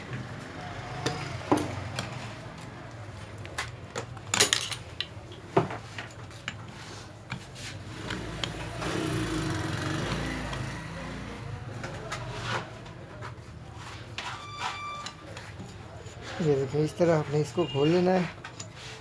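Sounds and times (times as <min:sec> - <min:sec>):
metal tools clinking on pulley: 0:04.3 - 0:05.1.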